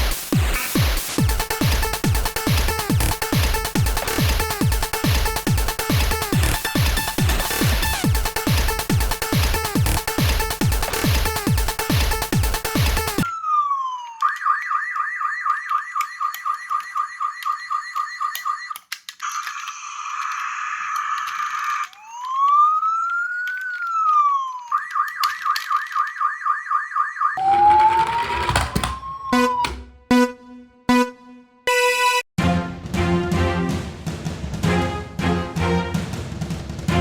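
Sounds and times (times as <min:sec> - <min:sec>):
toy electronic siren: 0:13.0 - 0:30.0
background music: 0:27.5 - 0:37.0.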